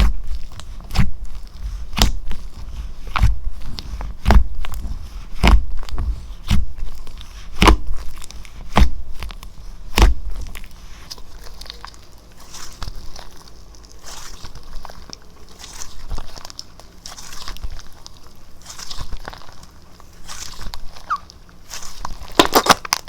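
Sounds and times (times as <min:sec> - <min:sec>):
soft crackle: 0:00.0 - 0:23.0
slime popping with thump: 0:07.5 - 0:08.1, 0:08.7 - 0:10.6.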